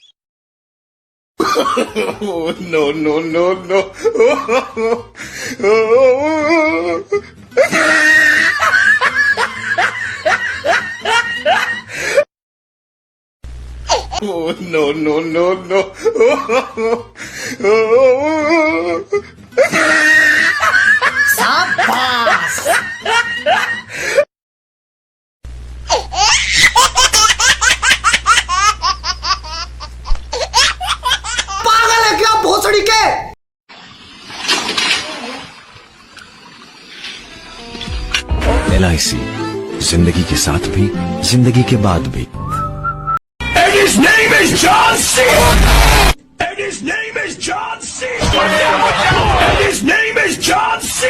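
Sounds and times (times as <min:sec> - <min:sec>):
person laughing loudly: 0:01.4 - 0:02.9, 0:03.6 - 0:12.2, 0:15.7 - 0:24.2
high-pitched laughter: 0:05.6 - 0:11.9, 0:18.4 - 0:23.9, 0:25.9 - 0:31.7.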